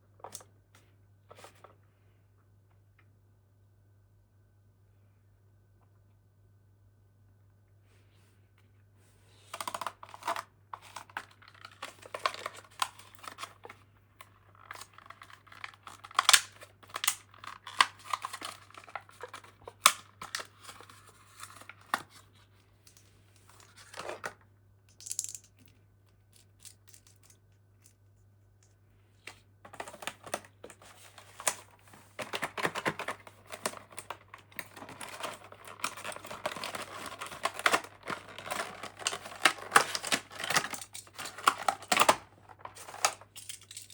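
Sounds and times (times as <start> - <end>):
toy packaging crinkling and tearing: 9.5 - 13.8, 14.5 - 24.2, 29.7 - 43.9.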